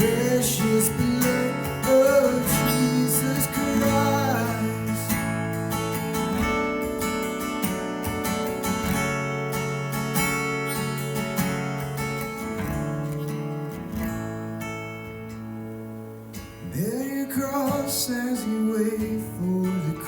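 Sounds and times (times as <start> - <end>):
acoustic guitar strumming chords: 0.0 - 20.0.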